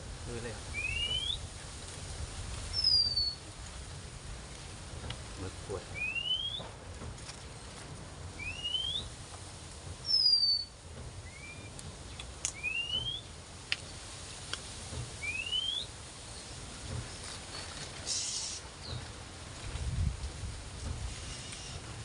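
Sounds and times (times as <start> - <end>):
bird rising whistle: 0.7 - 1.4, 2.7 - 3.4, 5.9 - 6.6, 8.4 - 9.1, 10.0 - 11.8, 12.5 - 13.3, 15.2 - 15.9, 18.1 - 18.6
bird falling whistle: 0.8 - 1.4, 6.0 - 6.6, 8.4 - 9.1, 12.5 - 13.2, 15.2 - 15.9.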